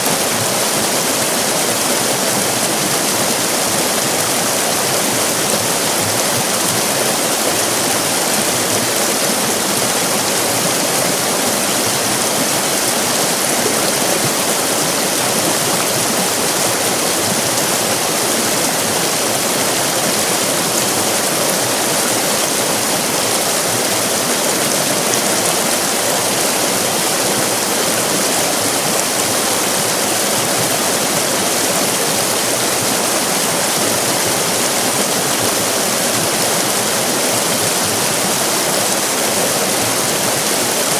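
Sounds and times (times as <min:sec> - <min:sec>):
river rapids rushing: 0:00.0 - 0:40.9.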